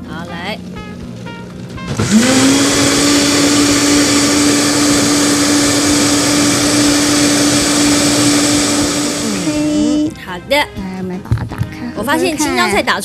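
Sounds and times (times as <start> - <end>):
blender motor humming: 1.9 - 10.2.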